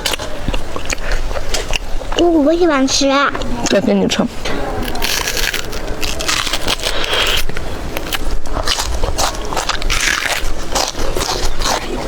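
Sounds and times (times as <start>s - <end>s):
wet mouth clicks: 0.0s - 2.2s
person chewing crunchy food: 0.0s - 2.3s, 4.6s - 12.0s.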